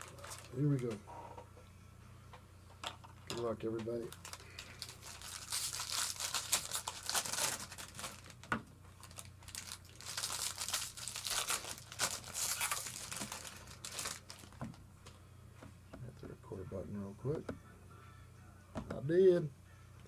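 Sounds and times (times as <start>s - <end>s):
card pack wrapper crinkling: 0.0s - 1.0s, 4.0s - 14.8s.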